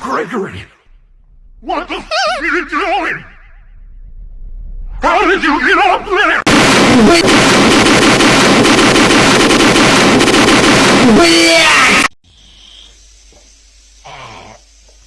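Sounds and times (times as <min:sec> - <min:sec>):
distorted noise blast with voice: 0:06.5 - 0:07.5, 0:11.0 - 0:12.1.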